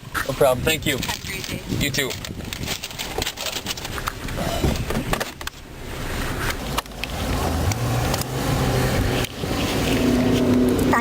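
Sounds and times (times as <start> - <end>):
car engine revving: 5.7 - 11.0.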